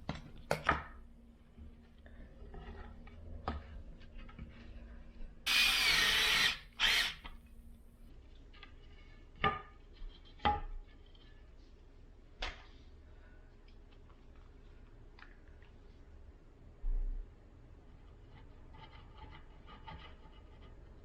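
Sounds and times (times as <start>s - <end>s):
power drill running: 5.5s - 7.3s.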